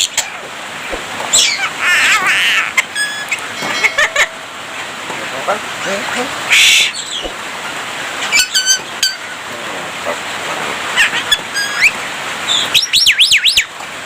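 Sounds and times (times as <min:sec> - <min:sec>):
bird whistling: 0:02.9 - 0:04.3, 0:11.2 - 0:13.7.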